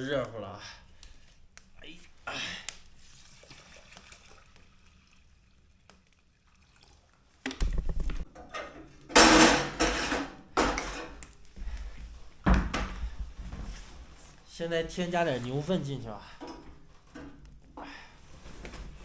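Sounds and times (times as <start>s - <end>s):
metal clattering and scraping: 8.4s - 11.2s.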